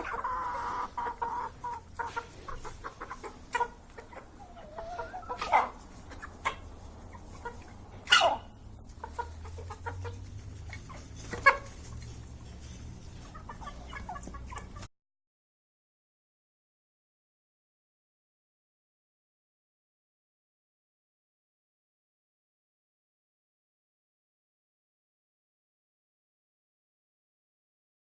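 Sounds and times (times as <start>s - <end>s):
chickens clucking: 0.0s - 14.9s.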